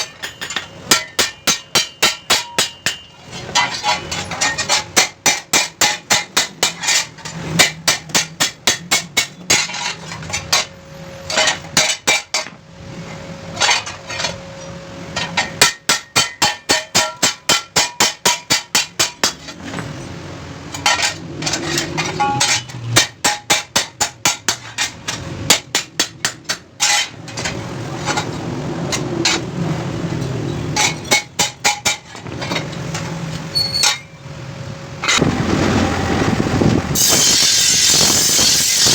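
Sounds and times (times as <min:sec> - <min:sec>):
hammer striking steel blade: 0:00.0 - 0:07.0, 0:37.0 - 0:38.9.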